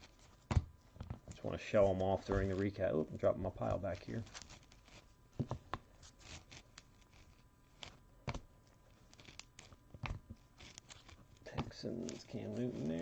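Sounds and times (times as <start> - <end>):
trading cards shuffled: 3.6 - 13.0.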